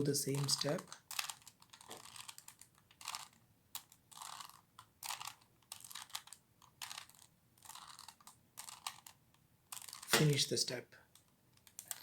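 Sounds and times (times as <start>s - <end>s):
puzzle cube clicking: 0.4s - 9.2s.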